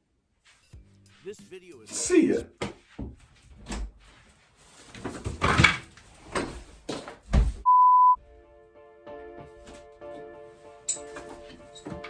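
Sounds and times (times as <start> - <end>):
music: 0.6 - 2.4, 8.2 - 12.0
censor bleep: 7.6 - 8.2.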